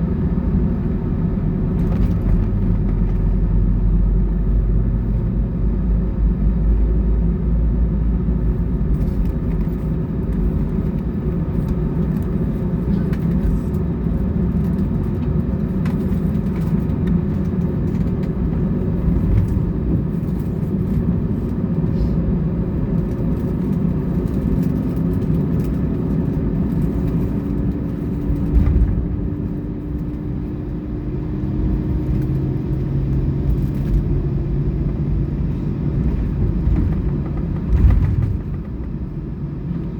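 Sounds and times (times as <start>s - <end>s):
aircraft engines idling: 8.2s - 39.8s.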